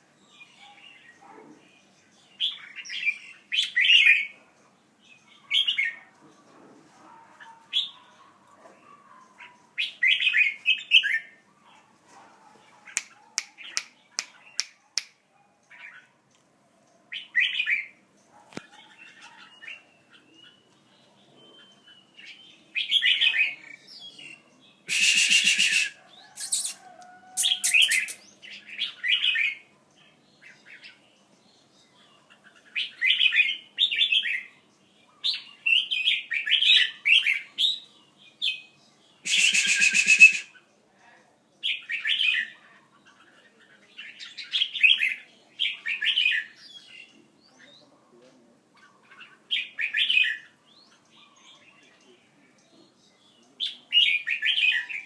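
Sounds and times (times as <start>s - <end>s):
birds chirping: 0.0s - 55.0s
harsh bird squawks: 24.9s - 28.2s, 39.2s - 40.6s.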